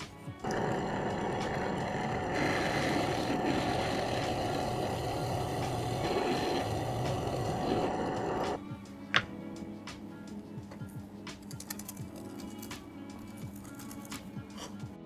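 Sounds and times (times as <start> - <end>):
power tool motor running: 0.4 - 8.6.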